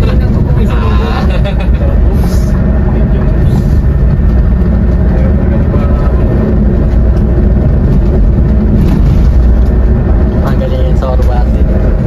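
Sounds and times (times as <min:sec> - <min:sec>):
coach engine and road rumble: 0:00.0 - 0:12.0.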